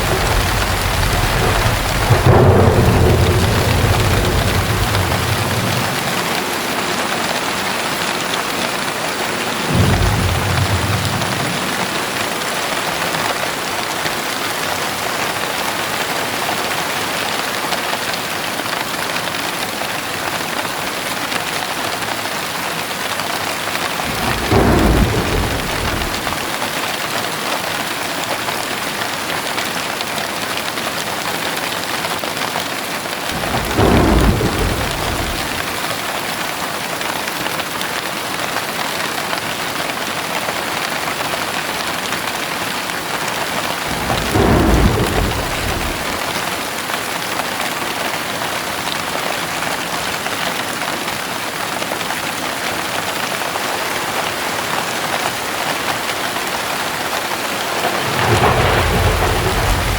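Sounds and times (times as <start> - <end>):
low thunder rumbles: 0.0 - 13.7, 23.8 - 26.8, 33.3 - 36.2, 43.2 - 46.8, 57.6 - 59.9
heavy rain hissing: 0.0 - 15.1, 23.4 - 27.1, 33.1 - 36.5, 41.4 - 47.1, 56.8 - 59.9.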